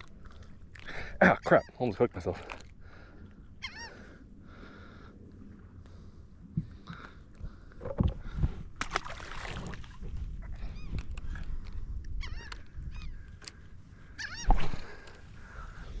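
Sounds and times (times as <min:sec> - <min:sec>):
gulls calling: 0:02.9 - 0:05.2, 0:12.2 - 0:15.9.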